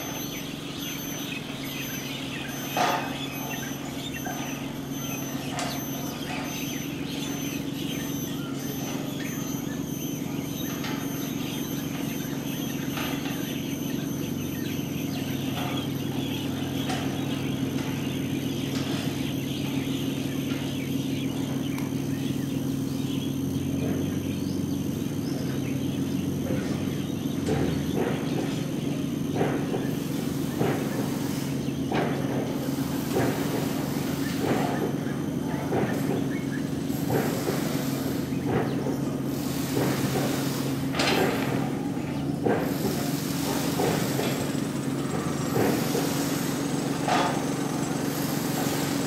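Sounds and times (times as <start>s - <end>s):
faint high pulsing tone: 0.0s - 27.4s
bird chirps: 0.0s - 49.0s
steady low hum: 0.0s - 49.0s.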